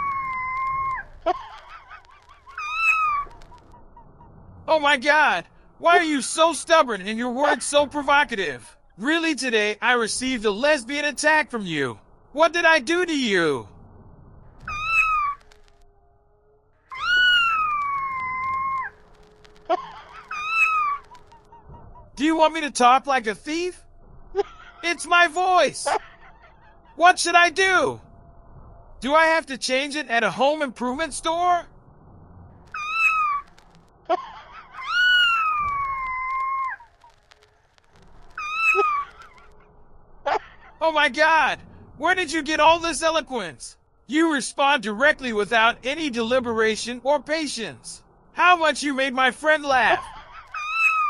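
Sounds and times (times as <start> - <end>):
cat meowing: 2.6 - 3.4, 14.7 - 15.4, 16.9 - 18.9, 32.8 - 33.5, 34.8 - 36.8, 38.4 - 39.4, 50.6 - 51.0.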